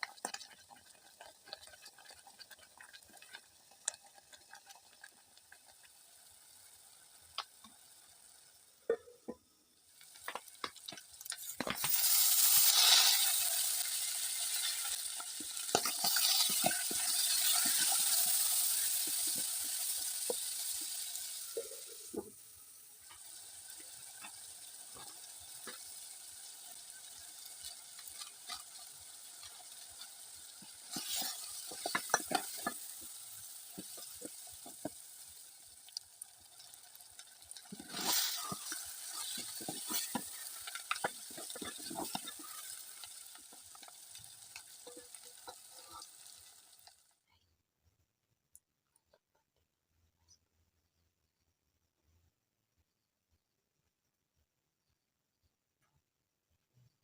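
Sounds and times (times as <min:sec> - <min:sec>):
utensil clicking in a pan: 0:00.0 - 0:05.2, 0:30.8 - 0:35.0
food sizzling in hot oil: 0:00.0 - 0:47.2.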